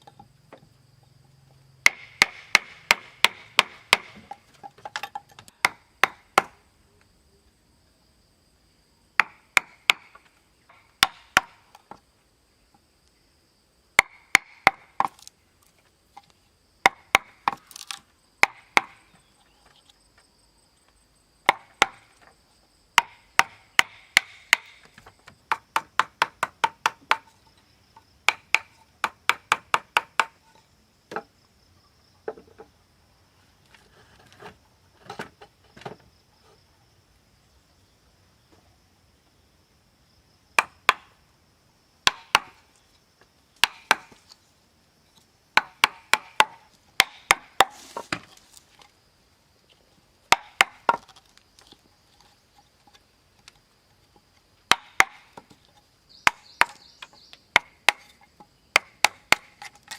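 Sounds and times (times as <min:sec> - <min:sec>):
wood chopping strikes: 0:01.8 - 0:06.6, 0:09.2 - 0:12.0, 0:14.0 - 0:15.3, 0:16.8 - 0:19.1, 0:21.4 - 0:22.3, 0:23.0 - 0:27.3, 0:28.3 - 0:30.4, 0:40.6 - 0:41.2, 0:42.0 - 0:42.7, 0:43.6 - 0:44.3, 0:45.6 - 0:48.4, 0:50.3 - 0:51.3, 0:54.7 - 0:59.9.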